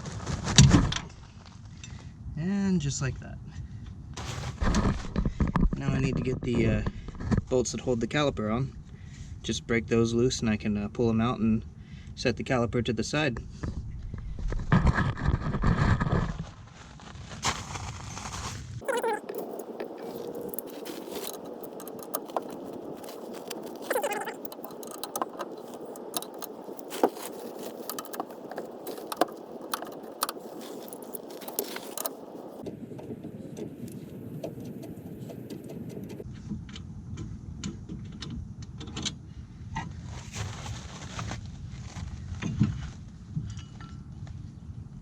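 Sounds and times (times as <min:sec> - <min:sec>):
metal tools clinking: 0:18.8 - 0:32.6.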